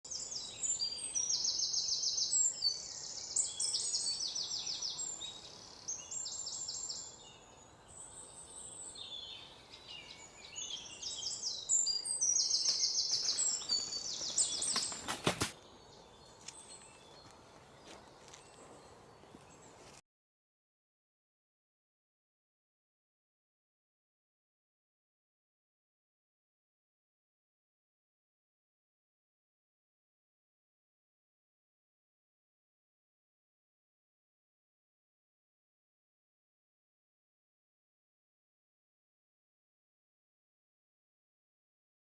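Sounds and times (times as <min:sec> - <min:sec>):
small birds trilling and chattering: 0:00.1 - 0:20.0.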